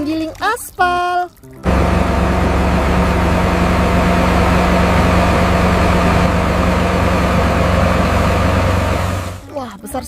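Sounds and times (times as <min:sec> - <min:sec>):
diesel engine idling: 0:01.7 - 0:09.4.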